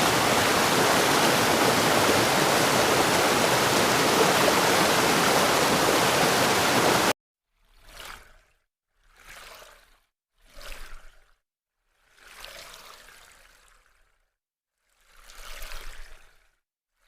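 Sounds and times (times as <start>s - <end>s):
rushing water: 0.0s - 7.2s.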